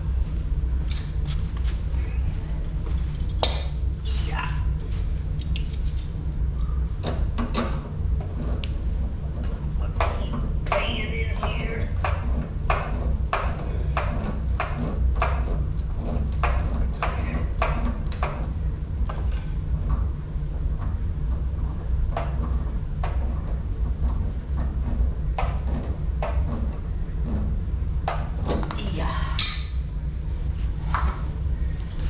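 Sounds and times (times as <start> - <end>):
electric pump humming: 0.0 - 32.0
sharp knocks: 9.8 - 15.6, 16.4 - 18.5.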